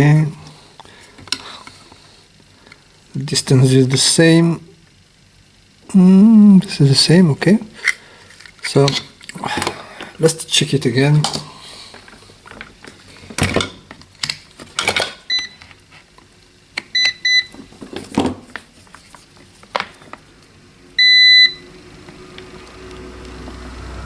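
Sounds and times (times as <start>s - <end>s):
multimeter beeping: 15.3s - 15.6s, 16.9s - 17.6s, 21.0s - 21.6s.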